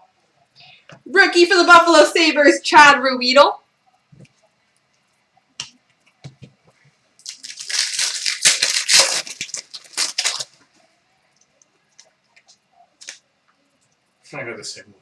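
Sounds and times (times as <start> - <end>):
foil wrapper crinkling: 7.2 - 10.8, 12.0 - 13.2.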